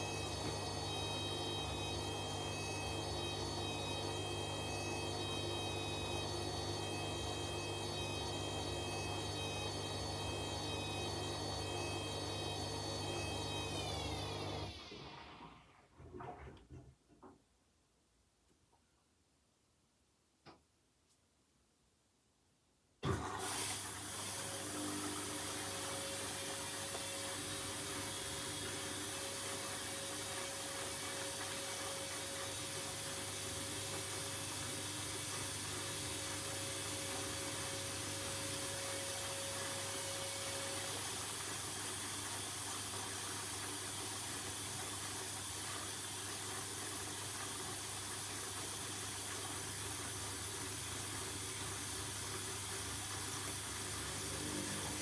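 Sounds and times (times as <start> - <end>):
water hissing through washing machine: 5.4 - 15.8, 23.0 - 55.0.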